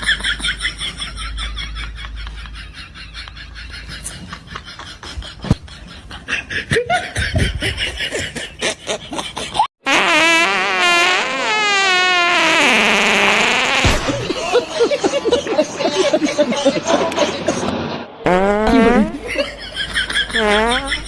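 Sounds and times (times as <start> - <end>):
people laughing and snickering: 0.0 - 9.7, 14.0 - 17.7, 18.8 - 21.0.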